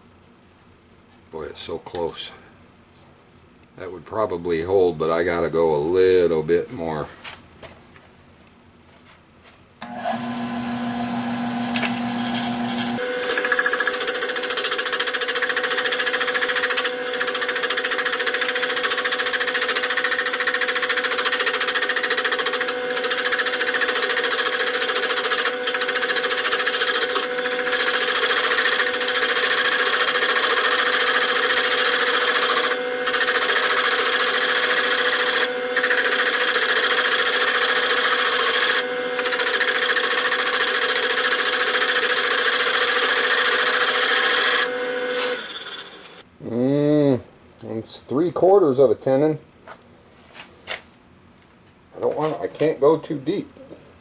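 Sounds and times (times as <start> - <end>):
lathe motor whining: 9.8 - 46.2
turning tool cutting wood: 9.8 - 46.2.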